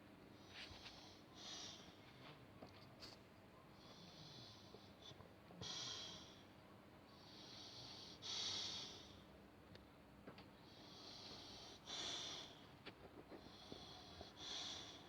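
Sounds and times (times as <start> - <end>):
pet snoring: 10.6 - 12.6, 13.4 - 15.0.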